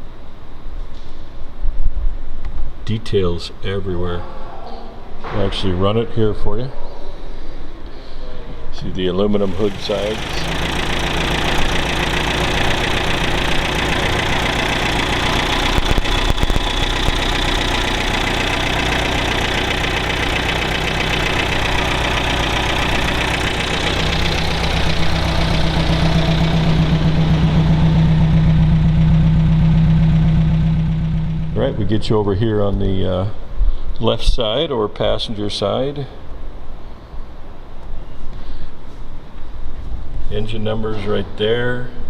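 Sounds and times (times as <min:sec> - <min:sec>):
car engine idling: 0:09.3 - 0:32.0.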